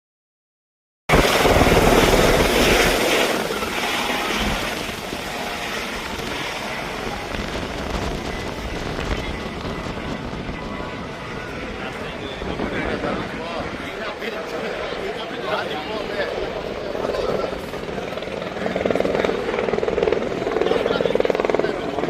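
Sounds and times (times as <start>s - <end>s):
helicopter rotor and engine: 1.1s - 22.0s.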